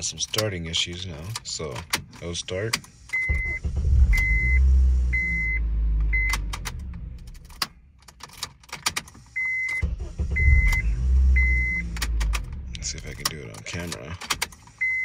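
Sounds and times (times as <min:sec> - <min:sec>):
car engine starting: 0:00.0 - 0:15.0
dashboard warning chime beeping: 0:02.2 - 0:06.7, 0:09.2 - 0:14.0, 0:14.7 - 0:15.0.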